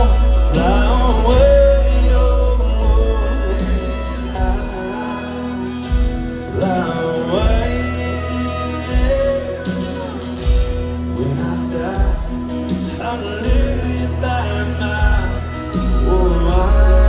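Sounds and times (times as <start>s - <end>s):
live country band playing: 0.0s - 17.0s.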